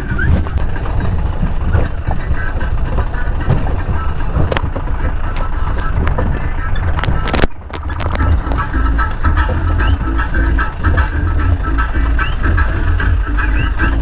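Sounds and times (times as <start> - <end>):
low engine rumble: 0.0 - 14.0
rattles and knocks from bumpy ride: 0.0 - 14.0.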